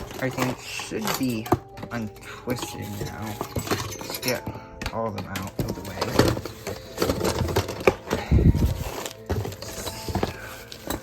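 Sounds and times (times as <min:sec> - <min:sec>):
rustling in cardboard box: 0:00.0 - 0:04.3, 0:05.5 - 0:11.0.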